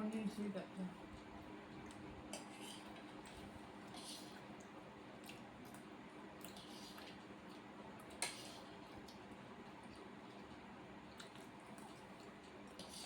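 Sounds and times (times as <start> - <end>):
faint eating clicks: 4.0 - 13.0.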